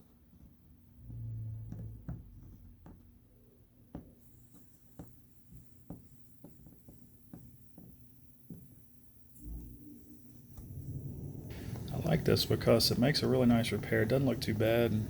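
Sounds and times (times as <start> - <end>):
faint taps and soft rubbing: 0.0 - 3.3, 3.9 - 9.0
low hum: 9.3 - 15.0.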